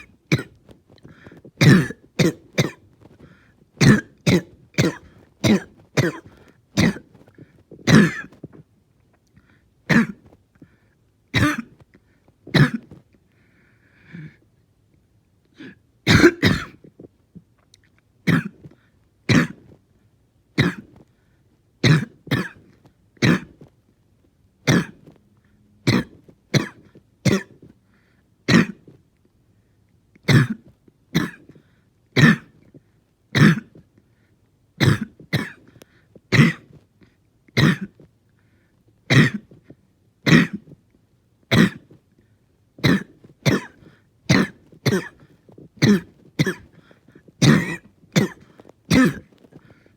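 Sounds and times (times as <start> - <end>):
person coughing: 0.0 - 3.2, 3.8 - 7.2, 7.8 - 8.4, 9.9 - 10.3, 11.4 - 11.8, 12.5 - 13.0, 15.6 - 16.9, 18.3 - 18.7, 19.3 - 19.8, 20.6 - 21.0, 21.8 - 23.6, 24.7 - 25.1, 25.9 - 27.7, 28.5 - 29.0, 30.3 - 31.6, 32.2 - 32.6, 33.4 - 33.8, 34.8 - 35.7, 36.3 - 36.8, 37.5 - 38.0, 39.1 - 39.6, 40.3 - 40.7, 41.5 - 42.0, 42.8 - 49.6.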